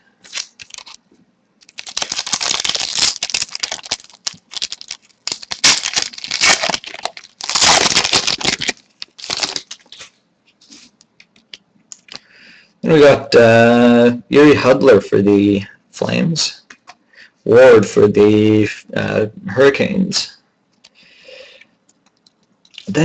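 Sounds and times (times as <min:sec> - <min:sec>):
foil wrapper tearing and crinkling: 0:00.2 - 0:01.0, 0:01.6 - 0:10.1.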